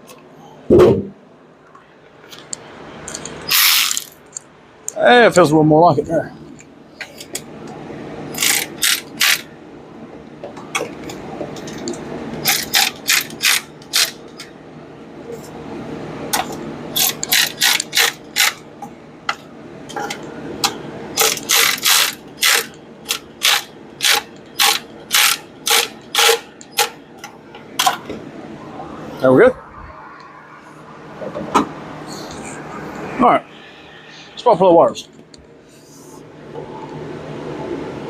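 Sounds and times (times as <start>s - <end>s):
ratchet wrench clicking: 3.1s - 4.2s, 8.4s - 9.4s, 12.4s - 14.2s, 17.0s - 18.6s, 21.2s - 26.9s.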